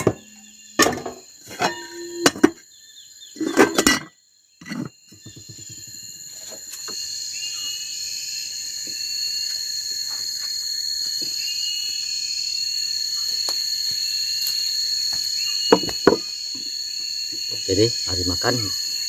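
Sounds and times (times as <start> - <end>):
insects trilling and chirping: 0.0 - 19.0.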